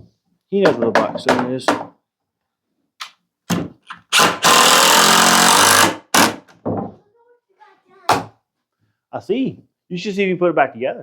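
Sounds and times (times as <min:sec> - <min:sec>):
handheld power tool running: 0:04.1 - 0:06.4.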